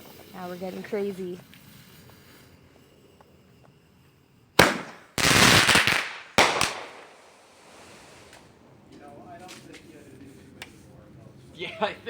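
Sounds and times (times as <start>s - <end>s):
firework crackling: 0.0s - 12.0s
firework bangs: 4.6s - 8.6s.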